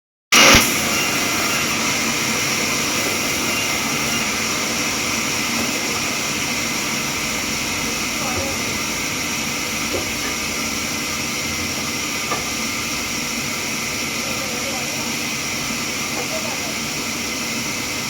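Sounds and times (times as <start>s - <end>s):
constant high whine: 0.4s - 18.0s
sawmill machinery running: 0.4s - 18.0s.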